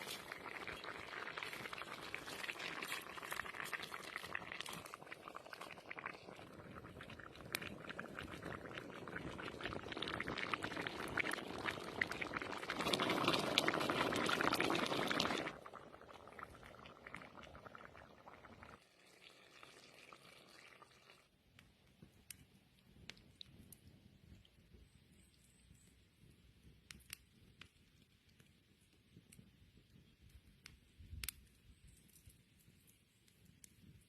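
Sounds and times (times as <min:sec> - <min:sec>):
liquid sizzling in a pan: 0:00.0 - 0:09.0.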